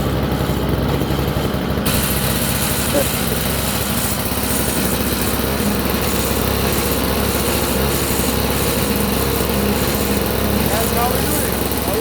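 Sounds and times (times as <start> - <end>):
snowblower engine running: 0.0 - 12.0.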